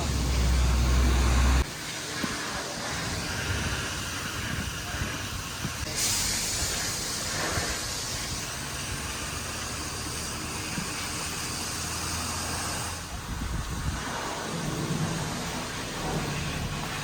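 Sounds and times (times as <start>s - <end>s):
pressure washer spray hissing: 0.0s - 17.0s.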